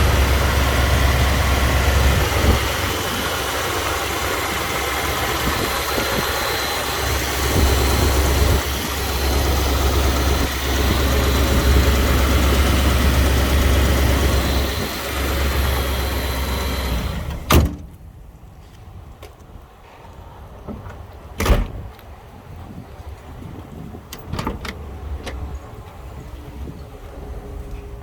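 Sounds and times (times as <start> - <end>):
car engine idling: 0.0 - 17.5.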